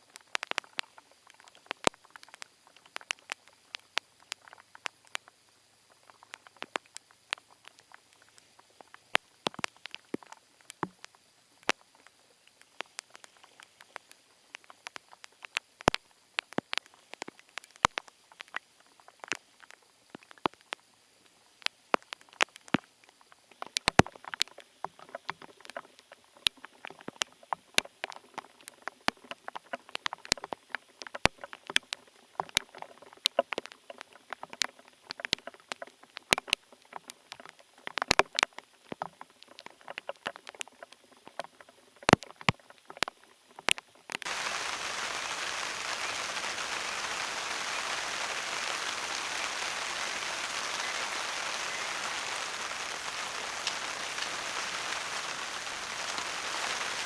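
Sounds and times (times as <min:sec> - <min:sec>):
raindrops tapping on a surface: 0:00.0 - 0:20.9, 0:21.6 - 0:57.0
heavy rain hissing: 0:44.3 - 0:57.0.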